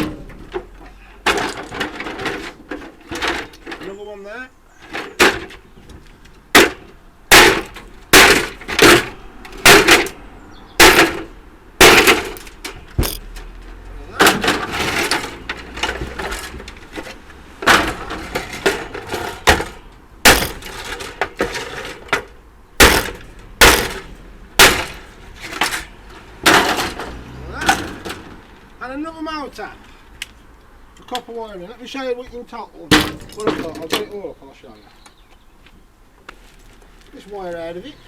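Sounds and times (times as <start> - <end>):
rattling and scraping: 0.0 - 28.7
sharp cracking blows on plastic: 4.9 - 10.2, 10.8 - 13.4, 14.2 - 27.2.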